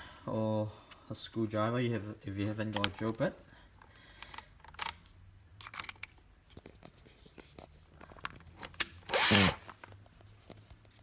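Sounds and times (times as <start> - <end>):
tool handling clicks and knocks: 3.8 - 10.6
power drill spinning down: 9.1 - 9.7.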